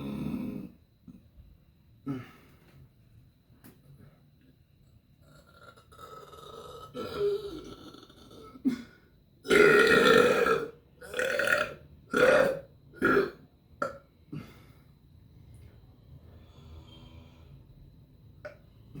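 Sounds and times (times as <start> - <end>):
person burping: 0.0 - 0.8, 2.0 - 2.5, 5.3 - 14.6.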